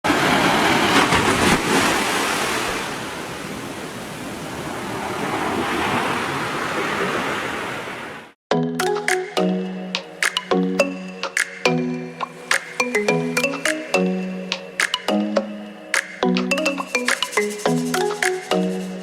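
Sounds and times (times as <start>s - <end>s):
waves washing onto beach: 0.0s - 8.4s.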